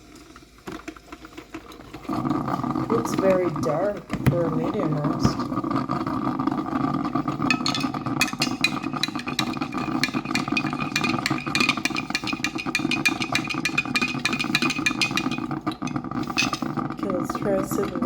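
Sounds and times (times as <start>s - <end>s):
steady hum: 2.4s - 18.0s
spoon clinking against mug: 7.5s - 16.8s.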